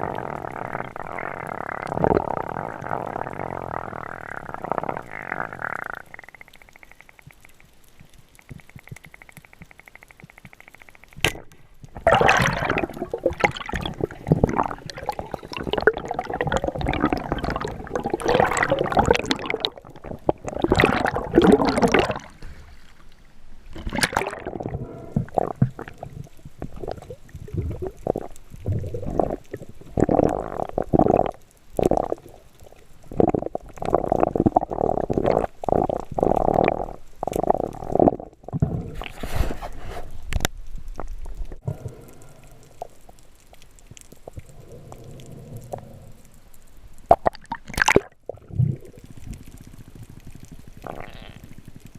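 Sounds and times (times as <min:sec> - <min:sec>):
sharp clicks: 0:06.1 - 0:11.6
sea water sloshing and gurgling: 0:08.4 - 0:51.9.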